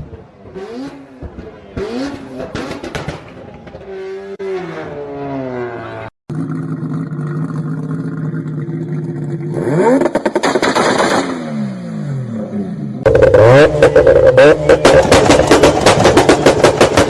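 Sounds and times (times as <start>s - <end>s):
exhaust pops and crackles: 13.0s - 17.0s
rotary engine revving: 13.0s - 17.0s.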